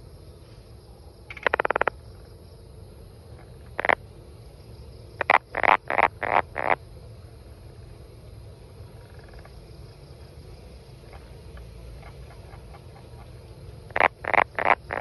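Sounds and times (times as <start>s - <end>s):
frog calling: 1.3s - 2.3s, 3.3s - 4.0s, 5.1s - 6.8s, 8.8s - 9.7s, 11.0s - 15.0s.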